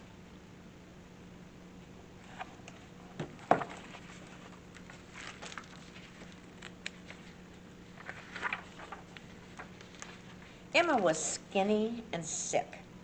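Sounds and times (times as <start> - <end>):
book pages turning: 2.3 - 10.5.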